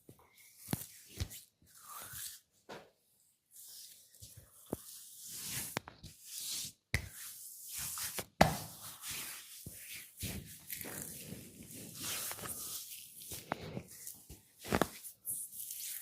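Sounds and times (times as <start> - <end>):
hands rubbing skin: 3.6 - 16.0.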